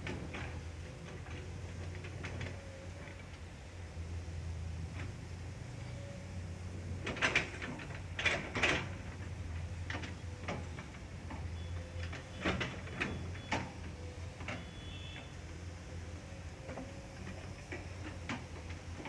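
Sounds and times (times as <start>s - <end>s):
construction knocks and clanks: 7.0s - 14.7s.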